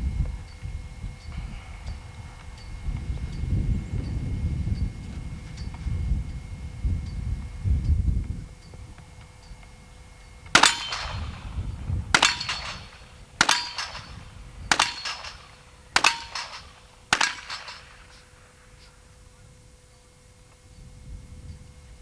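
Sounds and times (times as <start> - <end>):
revolver gunshots with echo: 10.5 - 18.7.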